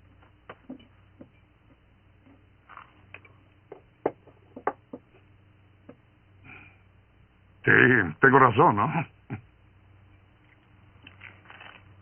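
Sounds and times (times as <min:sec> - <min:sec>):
faint low hum: 0:00.0 - 0:12.0.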